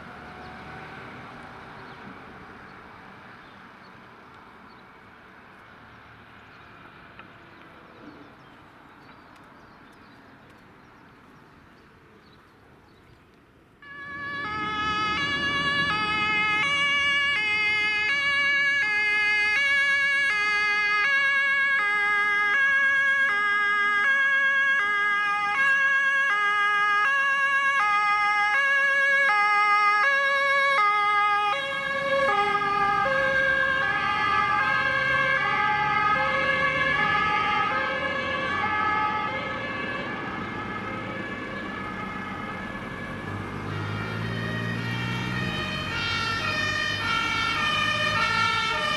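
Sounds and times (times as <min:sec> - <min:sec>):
van engine and tyre noise: 0:00.0 - 0:48.9
two-tone emergency siren: 0:13.8 - 0:48.9.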